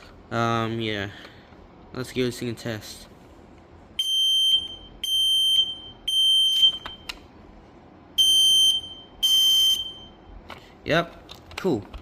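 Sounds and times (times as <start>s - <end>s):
smoke alarm beeps: 4.0s - 7.1s, 8.2s - 10.3s.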